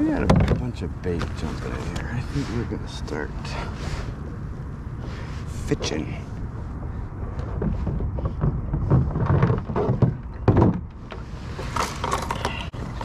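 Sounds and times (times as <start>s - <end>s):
low steady rumble: 0.0s - 13.0s
fishing gear knocks and thunks: 0.1s - 1.4s, 7.4s - 12.7s.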